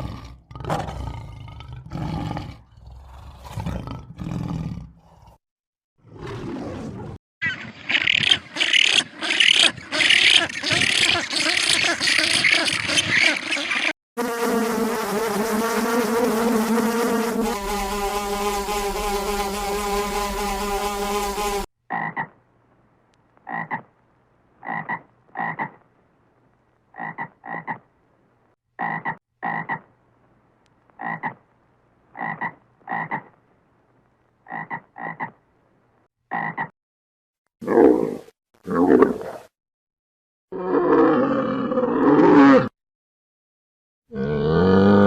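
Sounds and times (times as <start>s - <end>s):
insect buzzing: 8.6s - 21.7s
frog croaking: 21.9s - 22.4s, 23.4s - 23.9s, 24.6s - 25.8s, 26.9s - 27.9s, 28.8s - 29.9s, 31.0s - 31.4s, 32.1s - 33.4s, 34.4s - 35.4s, 36.3s - 36.7s.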